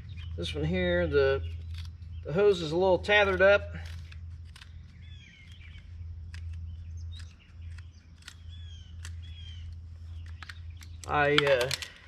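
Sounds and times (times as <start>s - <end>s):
birds chirping: 0.0s - 12.0s
low hum: 0.0s - 12.0s
sharp clicks: 3.9s - 12.0s.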